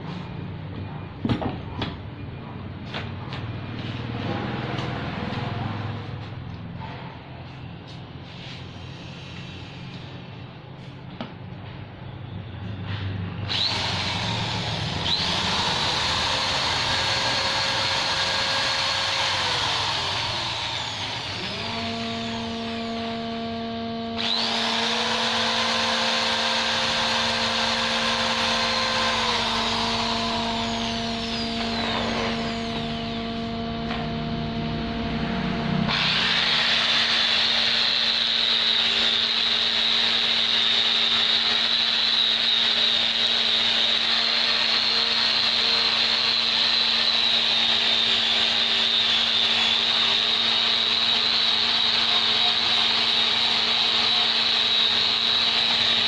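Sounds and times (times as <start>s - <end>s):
electric drill motor whining: 13.5s - 56.0s.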